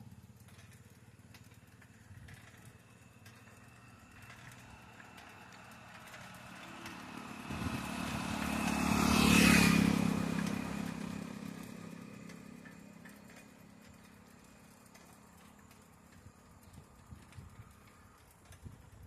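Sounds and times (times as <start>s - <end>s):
vehicle driving past: 2.3s - 16.0s.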